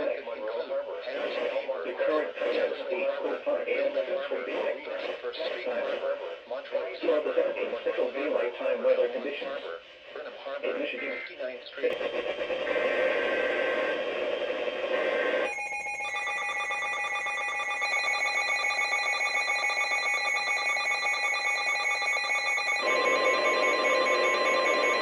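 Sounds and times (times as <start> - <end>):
radio hiss: 0.0 - 15.5
trilling electronic alarm: 15.0 - 25.0.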